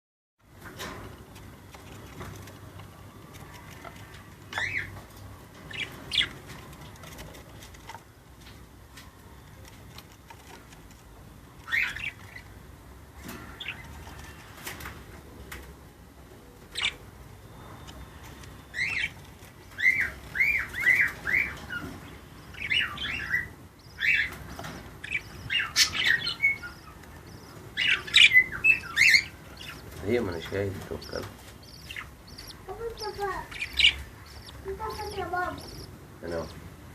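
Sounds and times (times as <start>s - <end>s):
chicks squeaky begging chirps: 11.6s - 12.6s, 16.6s - 36.7s
budgerigar calls: 16.7s - 17.0s, 22.5s - 36.6s.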